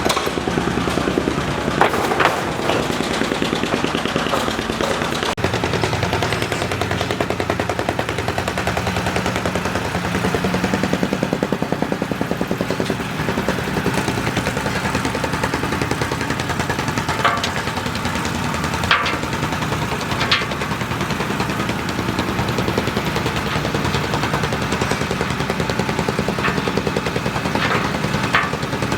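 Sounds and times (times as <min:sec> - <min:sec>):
sharp knocks: 0:00.0 - 0:05.4
construction machinery hammering: 0:00.0 - 0:28.9.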